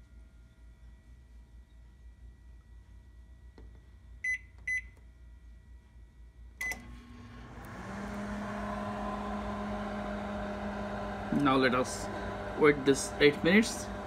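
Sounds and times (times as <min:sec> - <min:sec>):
microwave keypad beeps: 0:04.2 - 0:04.9, 0:06.6 - 0:06.9
microwave click: 0:06.6 - 0:14.0
microwave oven humming: 0:06.6 - 0:14.0.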